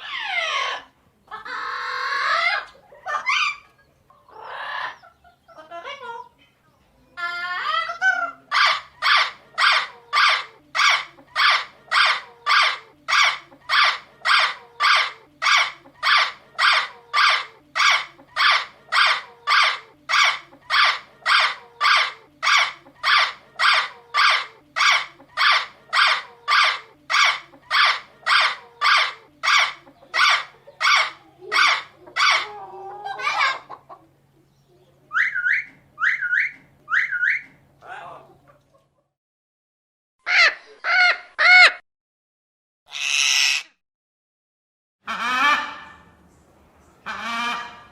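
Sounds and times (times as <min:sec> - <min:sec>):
parrot squawking: 0:00.0 - 0:03.7, 0:04.3 - 0:05.0, 0:07.2 - 0:33.8, 0:35.1 - 0:37.5, 0:40.2 - 0:41.8, 0:42.9 - 0:43.8, 0:45.0 - 0:46.1, 0:47.0 - 0:47.9.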